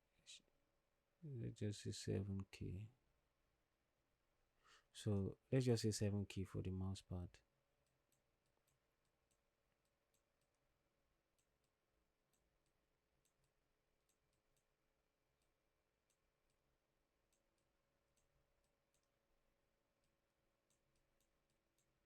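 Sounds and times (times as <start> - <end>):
computer mouse clicks: 7.8 - 10.6, 17.2 - 19.2, 20.0 - 22.0.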